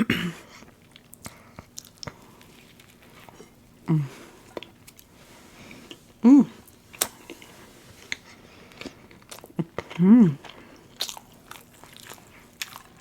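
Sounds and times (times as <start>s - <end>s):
mouth clicks and smacks eating: 0.6s - 3.8s, 5.8s - 13.0s
person humming: 3.8s - 4.3s, 6.2s - 6.6s, 9.9s - 10.5s.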